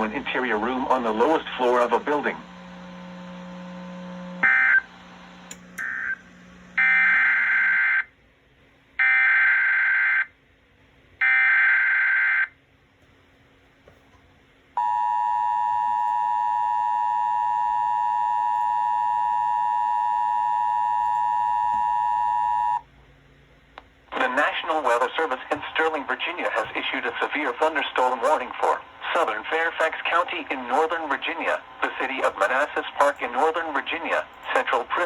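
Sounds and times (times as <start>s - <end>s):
steady two-tone alert signal: 14.8s - 22.8s
header data bursts: 24.2s - 35.0s.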